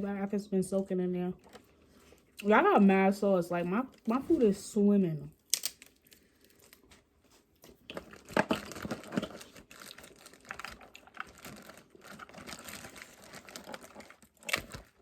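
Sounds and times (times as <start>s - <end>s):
crab shell cracking and snapping: 5.4s - 6.8s, 13.7s - 15.0s.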